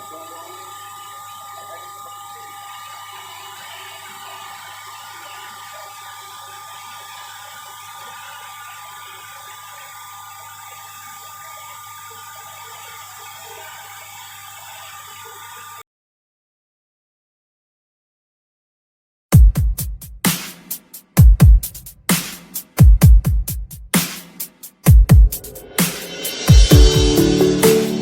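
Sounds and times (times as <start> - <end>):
electric rice huller running: 0.0 - 15.8.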